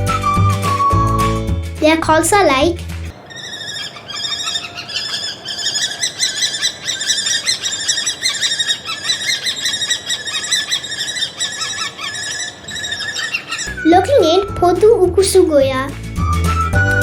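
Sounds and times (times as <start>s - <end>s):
kestrel calling: 3.0s - 15.5s.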